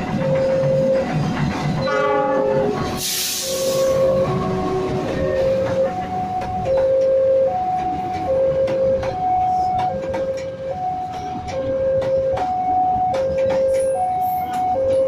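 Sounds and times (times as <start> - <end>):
train rumbling past: 0.0 - 15.0
air hiss: 3.0 - 4.1.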